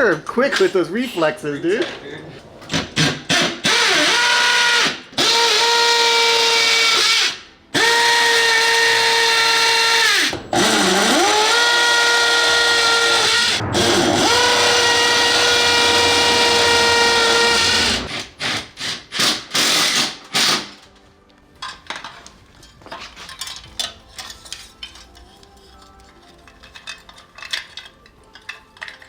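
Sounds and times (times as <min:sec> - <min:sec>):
power tool motor whining: 0:14.4 - 0:18.1.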